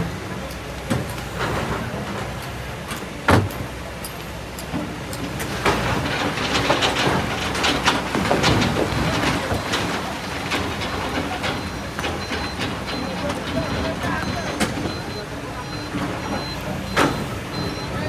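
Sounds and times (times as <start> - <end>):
excavator diesel engine running: 0.0 - 18.0
stones knocking and clanking: 6.3 - 9.8.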